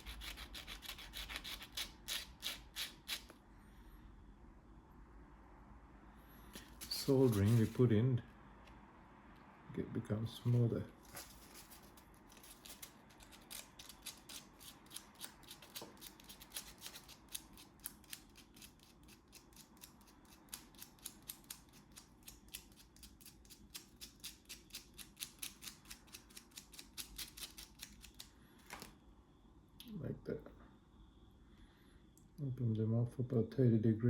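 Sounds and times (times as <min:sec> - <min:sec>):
sandpaper scratching metal: 0:00.0 - 0:03.3.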